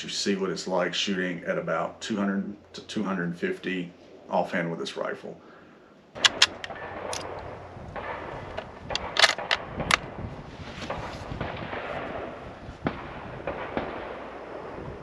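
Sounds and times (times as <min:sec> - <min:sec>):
outdoor background noise: 0:00.0 - 0:15.0
rifle shots: 0:06.2 - 0:07.4, 0:08.0 - 0:10.2, 0:10.9 - 0:14.5.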